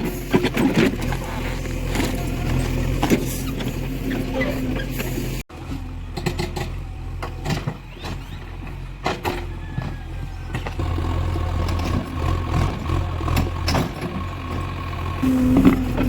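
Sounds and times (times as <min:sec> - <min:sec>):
diesel engine running: 0:00.0 - 0:16.0
steady whine: 0:15.2 - 0:16.0.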